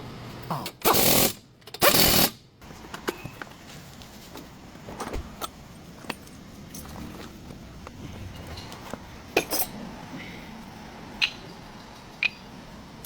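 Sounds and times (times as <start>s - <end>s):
pneumatic impact wrench: 0.6s - 2.4s.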